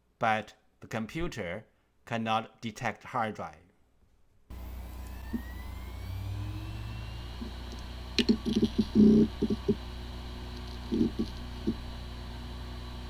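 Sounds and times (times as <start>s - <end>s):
hard drive head-seek ticks: 4.5s - 13.0s
hard drive spinning up: 4.5s - 13.0s.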